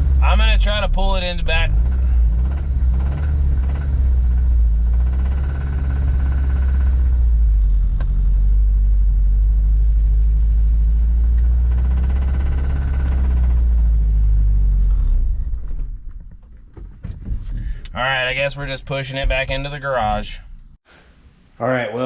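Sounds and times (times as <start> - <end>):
pickup engine idling roughly: 0.0 - 8.3.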